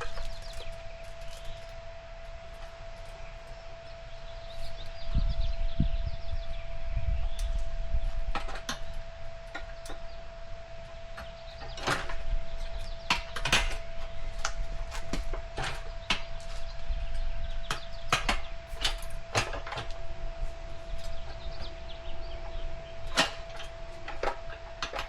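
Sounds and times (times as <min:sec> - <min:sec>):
tire levers clicking and scraping: 0:00.0 - 0:01.8.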